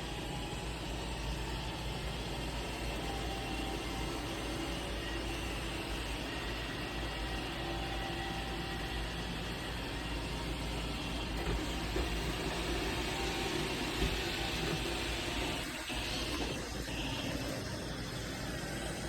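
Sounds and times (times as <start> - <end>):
faint whining tones: 0.0 - 19.0
robot vacuum motor humming: 0.0 - 19.0.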